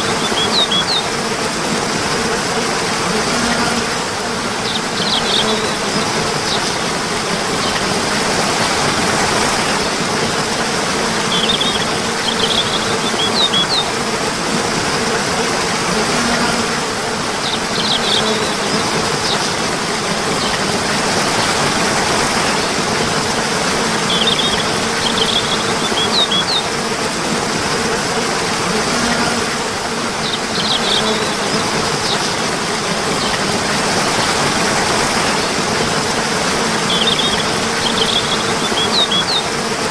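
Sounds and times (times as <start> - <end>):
bird chirps: 0.0 - 1.1, 4.7 - 6.9, 11.2 - 13.9, 17.4 - 18.6, 24.1 - 26.7, 30.2 - 31.4, 36.9 - 39.5
running water rushing: 0.0 - 39.9.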